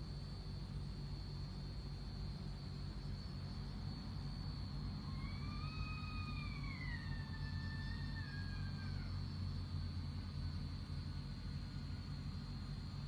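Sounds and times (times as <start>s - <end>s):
steady low hum: 0.0s - 13.0s.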